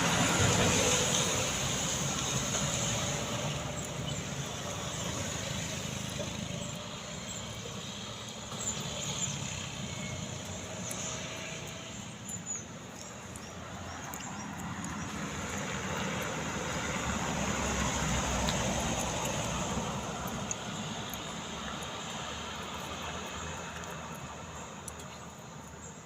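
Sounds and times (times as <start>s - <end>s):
truck engine rumbling under load: 0.0s - 25.9s.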